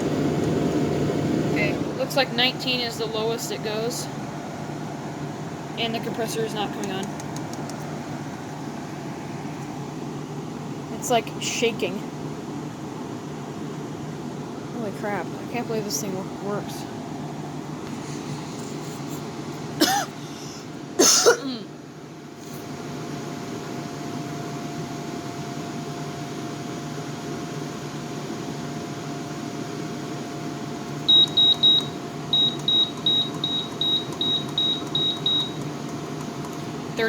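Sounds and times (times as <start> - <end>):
air conditioner fan humming: 0.0 - 37.0
control panel beeps: 31.1 - 35.7.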